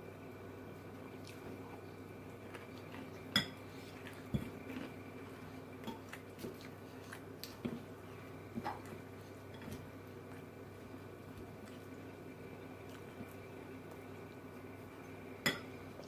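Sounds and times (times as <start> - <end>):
cutlery clinking against a dish: 15.4 - 15.7.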